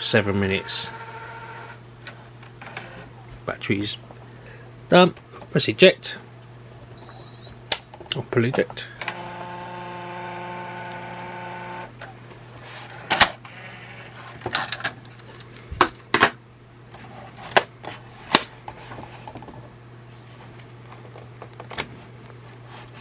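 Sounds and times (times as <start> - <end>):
small motor whirring: 9.0 - 11.9.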